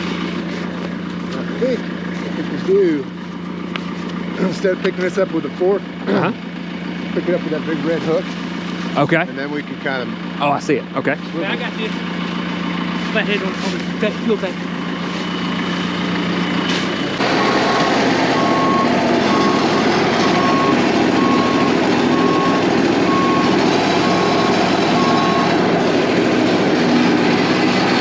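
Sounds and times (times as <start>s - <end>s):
heavy equipment engine running: 0.0s - 28.0s
backup alarm beeping: 17.2s - 25.7s.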